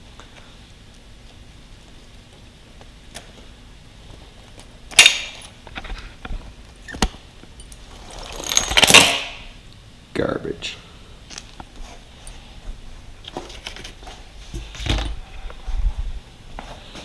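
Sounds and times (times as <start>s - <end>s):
chain links rattling: 14.7s - 15.2s.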